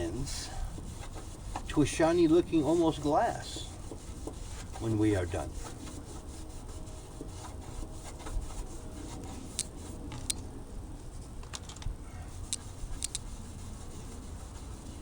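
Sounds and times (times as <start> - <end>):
cloth scrubbing plastic: 0.0 - 10.3, 12.3 - 15.0
sharp ticks: 12.5 - 13.3.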